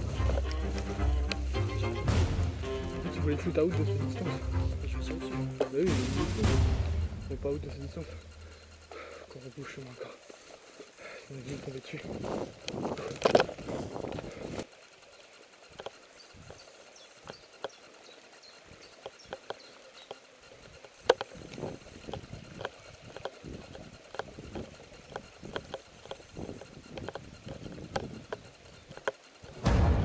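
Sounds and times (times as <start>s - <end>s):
footsteps on forest ground: 0.0s - 14.7s
sharp knock: 2.1s - 2.7s, 5.9s - 7.8s, 29.5s - 30.0s.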